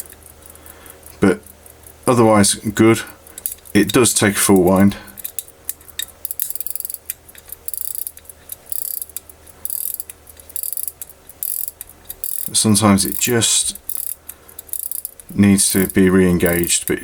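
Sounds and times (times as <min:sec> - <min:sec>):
pocket watch winding ratchet clicks: 0:00.0 - 0:02.0, 0:03.3 - 0:04.0, 0:04.6 - 0:17.0.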